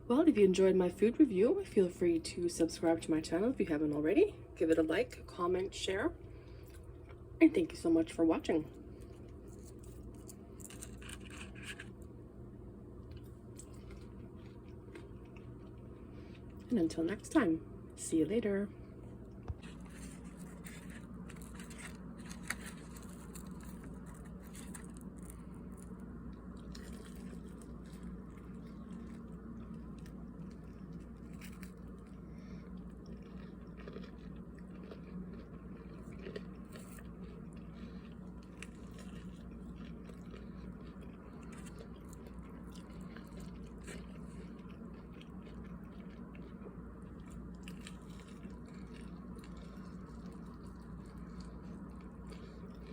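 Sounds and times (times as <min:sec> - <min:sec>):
steady low hum: 0:00.0 - 0:52.9
person chewing crunchy food: 0:08.8 - 0:16.7, 0:19.1 - 0:52.9.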